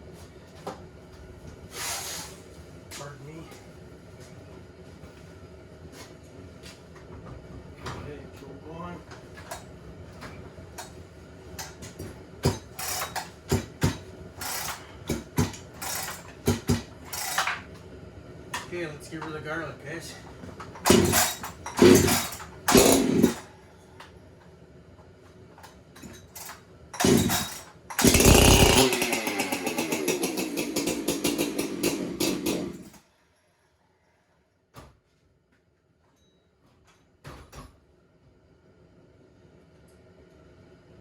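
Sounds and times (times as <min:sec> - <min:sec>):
starter cord pulls: 0:20.8 - 0:23.4, 0:27.0 - 0:32.9
chainsaw engine running: 0:20.9 - 0:23.5, 0:27.0 - 0:33.0.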